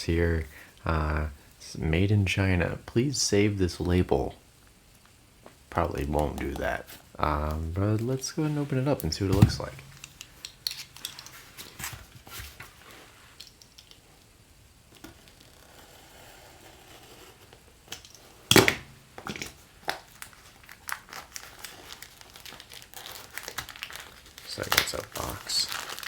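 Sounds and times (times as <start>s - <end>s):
cardboard packaging rustling: 5.9s - 13.3s, 18.7s - 26.0s.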